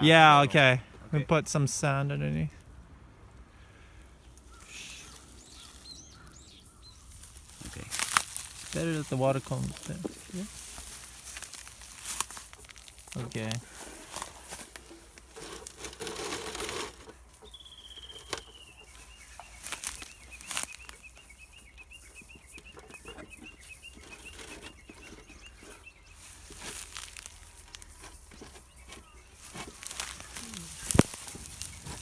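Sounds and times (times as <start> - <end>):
rustling and scraping of wooden box: 6.7 - 32.0
bird singing a high trill: 17.4 - 26.3.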